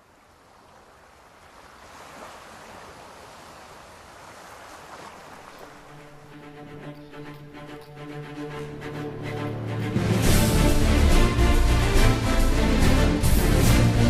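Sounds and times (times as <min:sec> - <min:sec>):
held music notes: 0:05.9 - 0:14.0.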